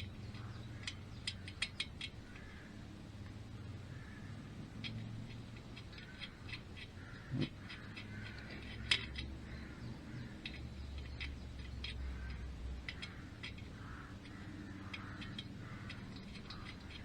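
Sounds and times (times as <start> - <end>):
metal tools clicking and tapping: 0.0 - 3.4, 4.5 - 17.0
low steady hum: 0.0 - 17.0.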